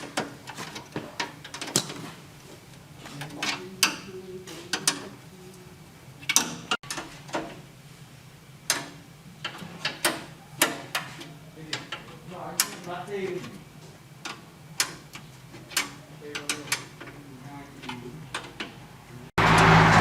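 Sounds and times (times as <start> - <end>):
tools and metal parts clinking: 0.0 - 2.1, 14.2 - 18.8.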